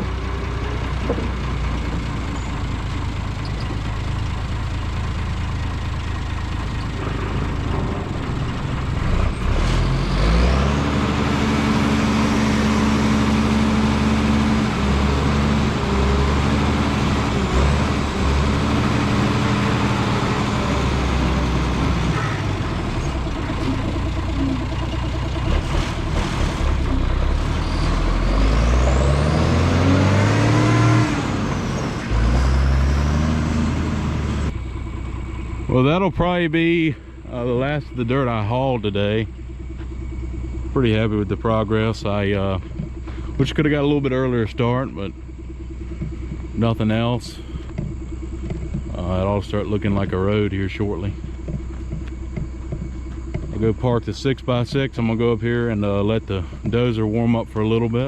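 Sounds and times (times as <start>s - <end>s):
truck diesel engine revving: 0.0s - 39.6s, 40.2s - 58.0s.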